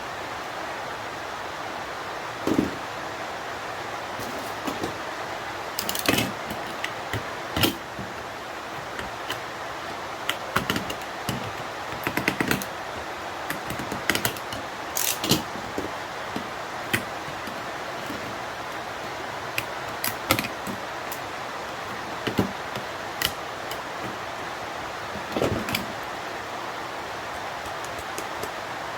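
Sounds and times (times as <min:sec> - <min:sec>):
steady background hiss: 0:00.0 - 0:28.9
hand tools clicking and tapping: 0:05.8 - 0:08.2, 0:08.8 - 0:26.1, 0:27.3 - 0:28.6.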